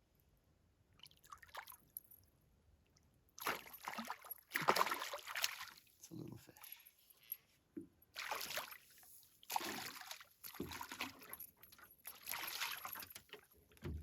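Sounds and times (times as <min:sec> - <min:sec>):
water splashing around a boat: 0:03.4 - 0:05.9, 0:08.2 - 0:13.9.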